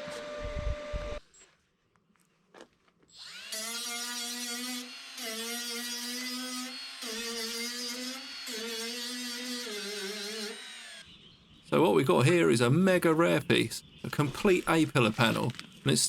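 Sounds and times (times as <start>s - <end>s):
electric power tool whining: 0.0s - 1.2s, 3.1s - 11.2s.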